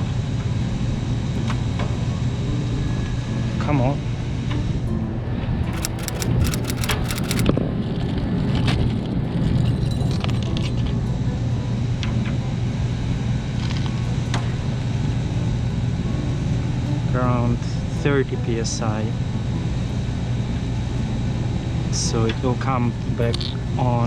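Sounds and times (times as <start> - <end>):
small metallic clicks: 5.8 - 7.5.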